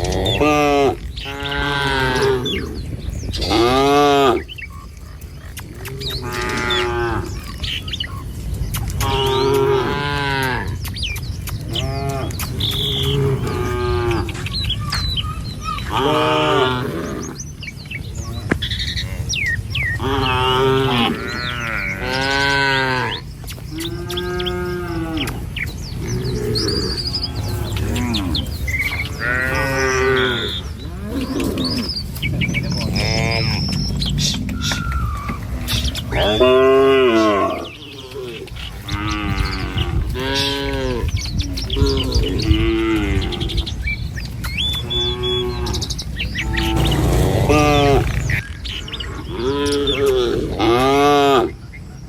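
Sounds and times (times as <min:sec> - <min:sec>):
cattle mooing: 0:00.0 - 0:04.6, 0:05.4 - 0:07.6, 0:09.0 - 0:10.8, 0:11.7 - 0:14.5, 0:20.0 - 0:32.0, 0:32.7 - 0:43.8, 0:44.7 - 0:48.4
steady low rumble: 0:17.1 - 0:50.6.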